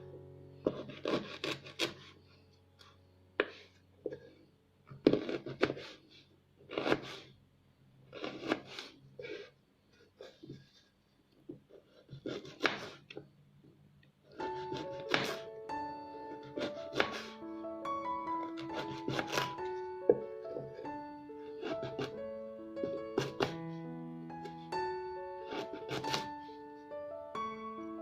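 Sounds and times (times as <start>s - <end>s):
ginger being scraped: 0.7s - 2.2s, 5.0s - 7.4s, 8.1s - 10.8s, 18.5s - 19.7s, 20.8s - 22.2s, 25.4s - 26.6s.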